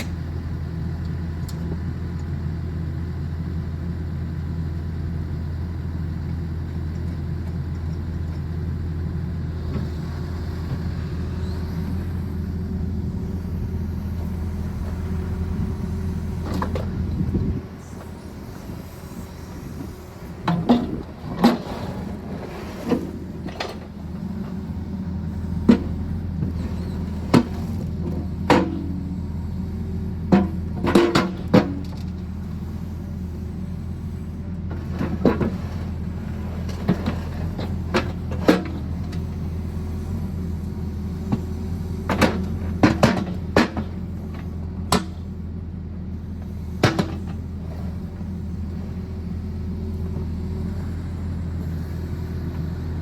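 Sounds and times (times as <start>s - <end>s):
excavator diesel engine running: 0.0s - 53.0s.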